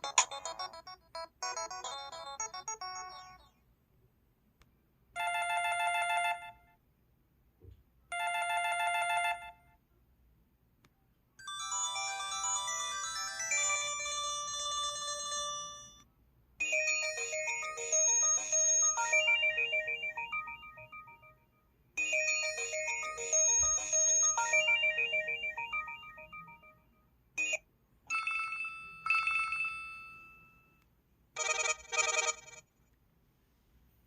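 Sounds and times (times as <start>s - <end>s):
two-tone phone ring: 0.0s - 3.5s, 8.1s - 9.8s, 16.6s - 21.4s, 22.0s - 30.8s, 31.4s - 32.7s
chiming ringtone melody: 0.0s - 3.6s, 11.4s - 30.8s.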